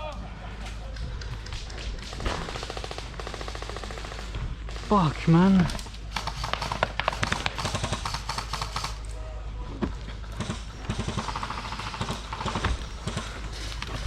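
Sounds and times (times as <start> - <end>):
gear rattling: 10.1 - 14.0.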